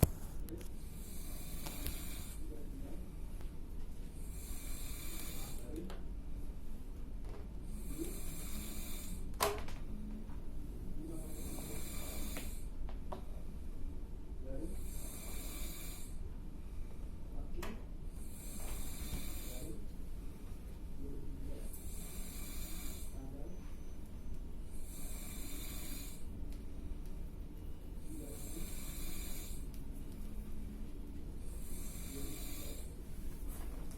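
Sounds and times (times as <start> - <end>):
person snoring loudly: 7.8 - 9.2, 11.3 - 12.6, 21.8 - 23.2, 24.8 - 26.2, 28.3 - 29.6, 31.5 - 32.9.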